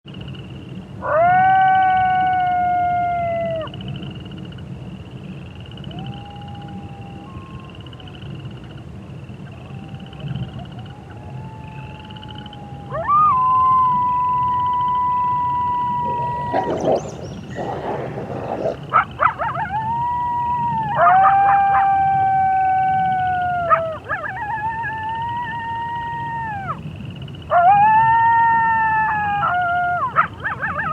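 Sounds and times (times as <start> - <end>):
coyote howling: 1.0 - 3.7, 5.8 - 8.3, 9.4 - 30.9
frogs and toads trilling: 3.6 - 30.9.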